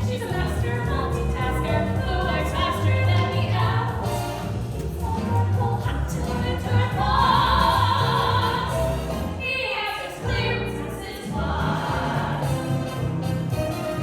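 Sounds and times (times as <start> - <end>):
backing music: 0.0 - 14.0
people singing a christmas song: 5.0 - 13.4.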